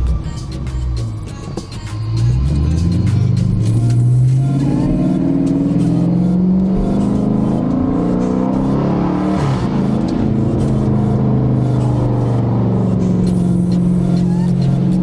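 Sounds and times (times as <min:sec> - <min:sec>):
car engine running under load: 0:00.0 - 0:15.0.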